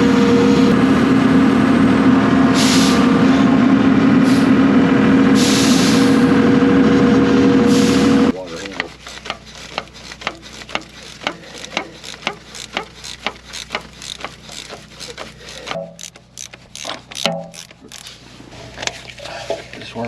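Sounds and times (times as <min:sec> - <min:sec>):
ratchet wrench clicking: 0:08.7 - 0:18.2.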